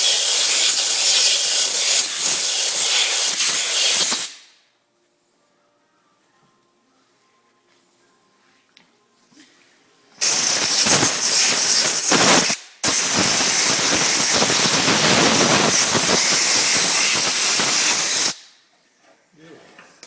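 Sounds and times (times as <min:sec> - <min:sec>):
pressurised gas hissing from nozzle: 0:00.0 - 0:04.5, 0:10.2 - 0:18.5.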